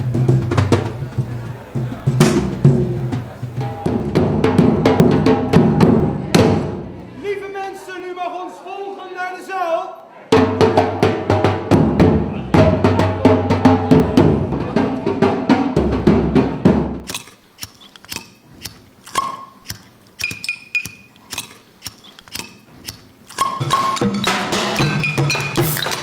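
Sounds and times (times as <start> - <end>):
music with bass and percussion: 0.0 - 6.5, 10.4 - 17.0, 23.4 - 26.0.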